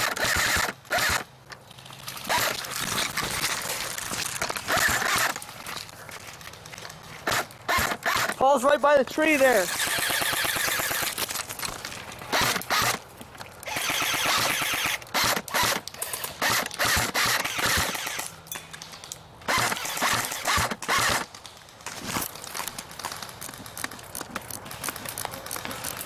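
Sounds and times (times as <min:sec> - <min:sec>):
airsoft guns firing: 0:00.0 - 0:01.3, 0:02.3 - 0:03.3, 0:04.4 - 0:05.4, 0:07.2 - 0:13.0, 0:13.6 - 0:18.6, 0:19.5 - 0:21.4
gun gearbox whirring: 0:00.0 - 0:08.4, 0:09.4 - 0:13.0, 0:13.6 - 0:18.3, 0:19.5 - 0:21.2.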